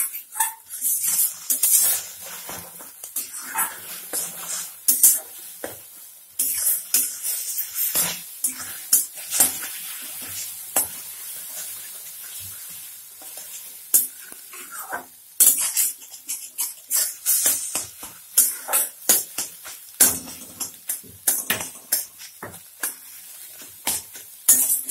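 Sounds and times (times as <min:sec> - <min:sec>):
eggs sizzling in oil: 0:00.0 - 0:24.9
spatula clicking against pan: 0:15.4 - 0:24.9.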